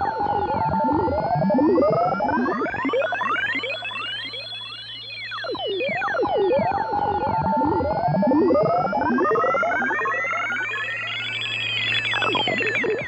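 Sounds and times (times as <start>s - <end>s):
warbling electronic tones: 2.6s - 6.5s, 8.4s - 13.0s.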